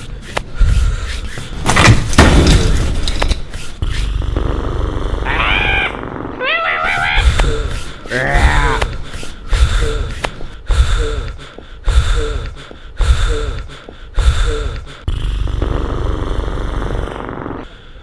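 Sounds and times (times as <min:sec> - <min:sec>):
rasping growl: 0:03.8 - 0:09.0, 0:14.4 - 0:18.0
breathy creature snorts: 0:12.0 - 0:18.0.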